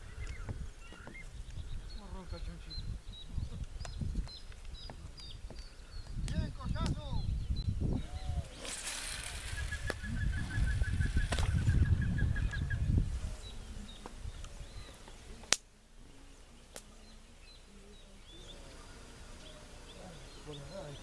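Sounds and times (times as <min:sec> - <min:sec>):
low rumbling on microphone: 0:00.0 - 0:15.4
rapid pulsing call: 0:08.0 - 0:13.8.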